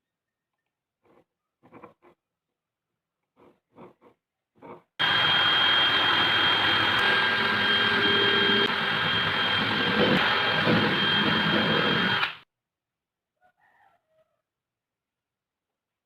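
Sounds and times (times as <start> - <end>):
power tool motor whining: 5.0 - 12.4.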